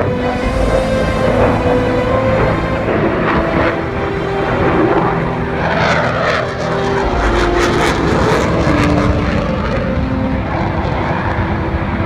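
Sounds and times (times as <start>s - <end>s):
propeller aircraft engine drone: 0.0s - 12.0s.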